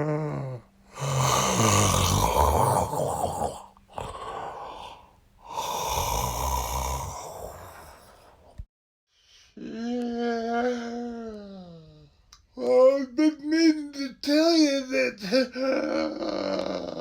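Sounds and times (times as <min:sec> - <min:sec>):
man yawning: 0:00.0 - 0:08.0, 0:15.2 - 0:17.0
man talking through a yawn: 0:00.0 - 0:08.3, 0:14.9 - 0:17.0.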